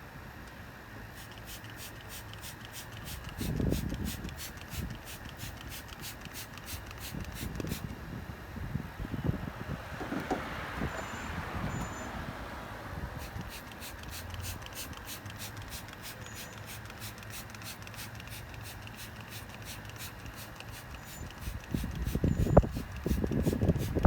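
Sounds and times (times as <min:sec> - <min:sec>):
steady low hum: 0:00.0 - 0:24.0
spray hissing: 0:01.1 - 0:07.9, 0:13.0 - 0:24.0
faint regular ticking: 0:13.3 - 0:21.7.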